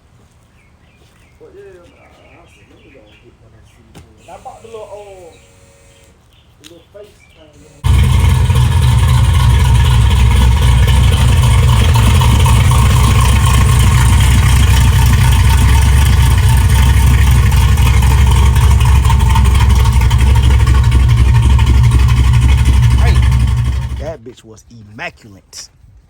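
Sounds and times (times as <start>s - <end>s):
car engine rumbling: 7.8s - 24.2s.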